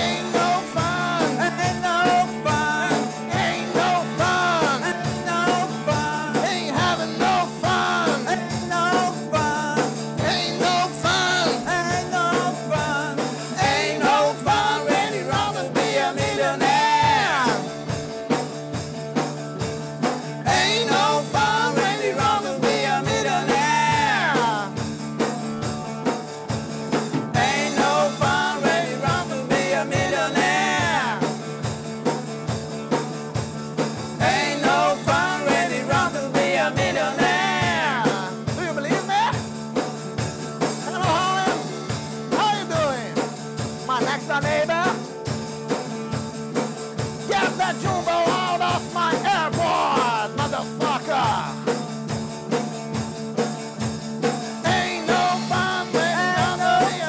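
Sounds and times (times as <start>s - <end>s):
pitch-bending guitar or voice line: 0.0s - 18.0s, 20.4s - 24.8s, 40.8s - 43.1s
rock band playing: 0.0s - 57.0s
steady drum beat: 0.0s - 57.0s.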